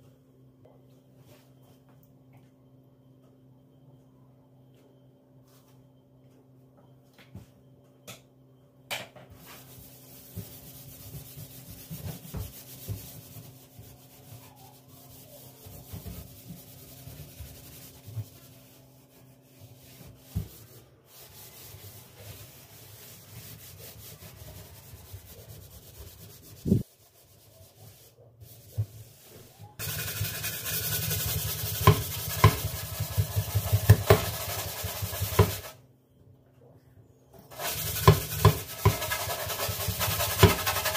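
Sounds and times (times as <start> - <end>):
scratchy rubbing and scraping: 29.8 - 35.8, 37.5 - 40.9.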